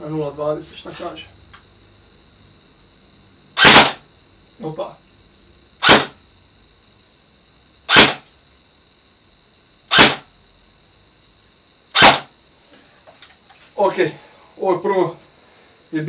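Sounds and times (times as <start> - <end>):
airsoft rifle single shots: 3.6 - 4.0, 5.8 - 6.2, 7.9 - 8.2, 9.9 - 10.3, 12.0 - 12.3.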